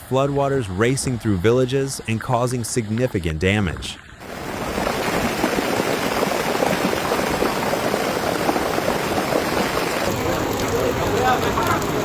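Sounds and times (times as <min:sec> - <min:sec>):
storm water rushing: 0:04.1 - 0:12.0.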